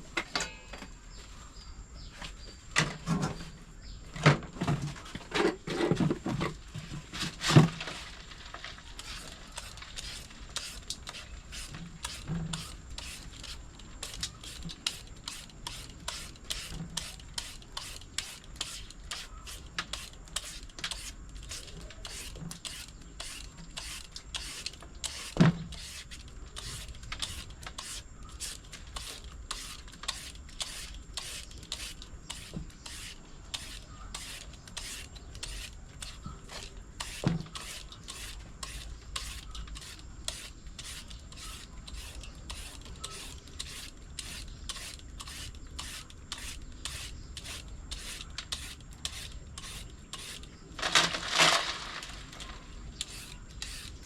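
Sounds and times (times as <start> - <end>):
papaya being shredded: 9.0 - 50.5.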